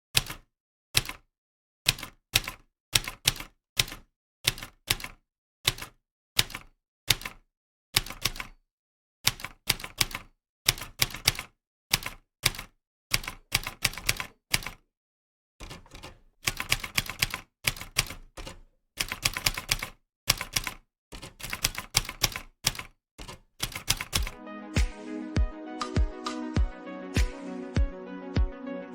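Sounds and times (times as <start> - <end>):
typewriter keys clacking: 1.9 - 7.4, 8.0 - 8.6, 9.3 - 14.8, 15.6 - 24.4.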